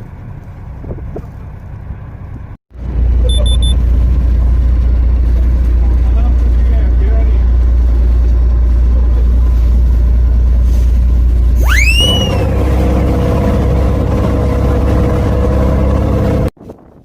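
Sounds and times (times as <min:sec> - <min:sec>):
boat engine droning: 0:00.0 - 0:16.5
rising whistle-like tone: 0:11.6 - 0:12.6.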